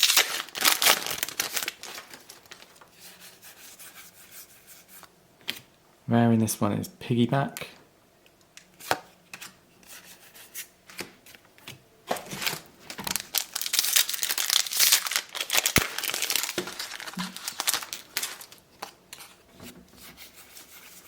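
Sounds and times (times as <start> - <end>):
wrapper tearing and crinkling: 0.0 - 2.9, 12.3 - 19.0
cards rustling: 0.0 - 3.1, 12.1 - 19.4.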